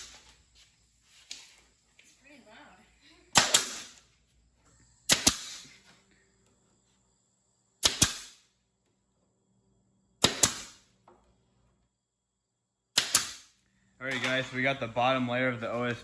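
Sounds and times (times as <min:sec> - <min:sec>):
nail gun firing into wood: 0:03.3 - 0:04.0, 0:05.1 - 0:05.7, 0:07.8 - 0:08.5, 0:10.2 - 0:10.9, 0:12.9 - 0:13.6.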